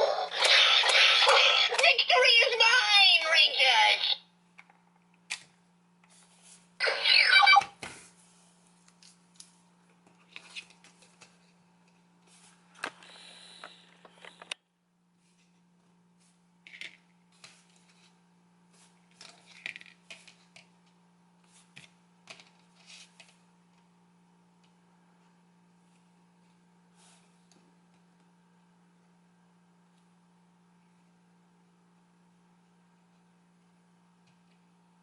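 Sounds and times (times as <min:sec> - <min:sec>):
faint steady hum: 0:00.0 - 0:35.0
electronic toy sound: 0:06.8 - 0:07.7.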